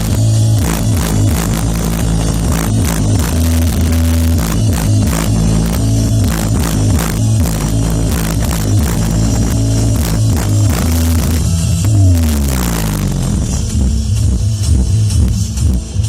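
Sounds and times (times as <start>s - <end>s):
bass-heavy music with drums: 0.0s - 16.0s.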